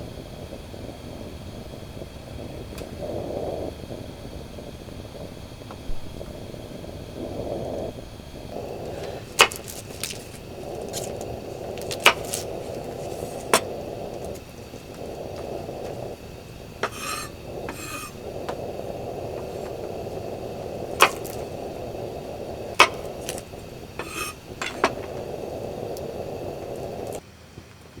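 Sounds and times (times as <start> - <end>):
rubbing and scraping: 8.6 - 21.8, 22.6 - 25.4
raspy strokes: 8.6 - 25.4.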